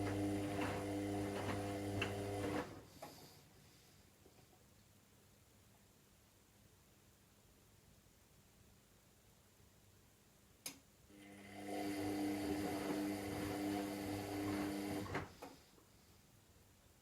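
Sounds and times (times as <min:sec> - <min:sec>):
washing machine motor humming: 0:00.0 - 0:02.8, 0:11.2 - 0:15.4.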